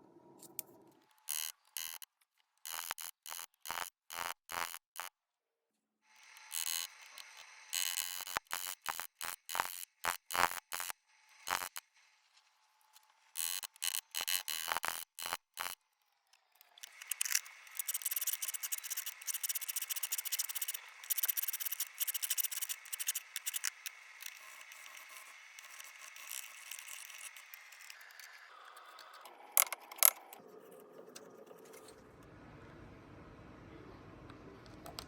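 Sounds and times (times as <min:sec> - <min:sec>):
sharp clicks: 0:16.7 - 0:30.4
scratchy scraping strokes: 0:16.9 - 0:28.0.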